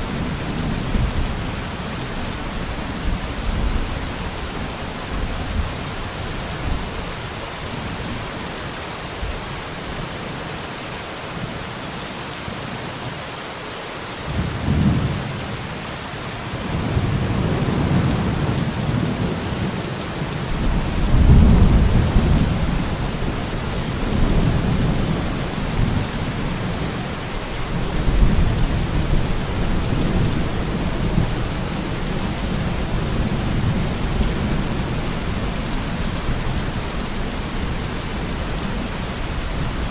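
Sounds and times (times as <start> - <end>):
steady rain: 0.0 - 39.9
rolling thunder: 20.5 - 27.0.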